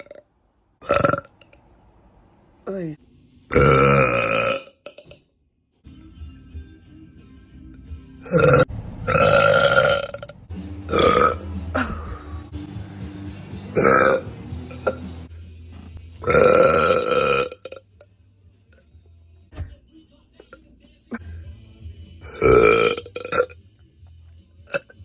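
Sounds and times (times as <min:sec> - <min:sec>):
woman burping loudly: 0:00.0 - 0:00.2, 0:00.8 - 0:01.5, 0:03.5 - 0:05.1, 0:08.2 - 0:10.3, 0:10.9 - 0:12.3, 0:13.8 - 0:15.0, 0:16.2 - 0:17.8, 0:22.3 - 0:23.5.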